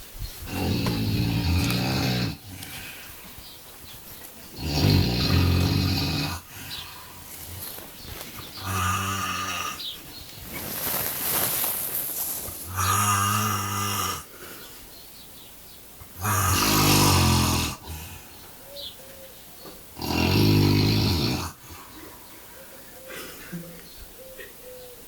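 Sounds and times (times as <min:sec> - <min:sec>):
man snoring loudly: 0:00.5 - 0:02.8, 0:04.6 - 0:06.5, 0:08.6 - 0:09.9, 0:12.7 - 0:14.3, 0:16.2 - 0:18.1, 0:20.0 - 0:21.6
breathy exhale: 0:06.4 - 0:07.3.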